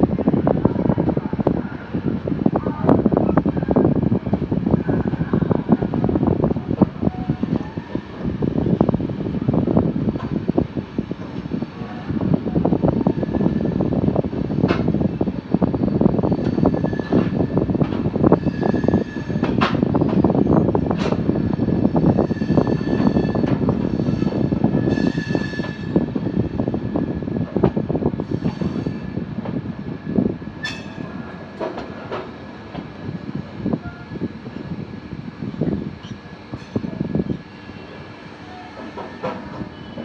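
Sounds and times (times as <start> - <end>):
train rumble: 0.0 - 40.0
wheel squealing on rail: 15.8 - 26.1, 28.2 - 29.2, 30.6 - 31.3, 36.0 - 40.0.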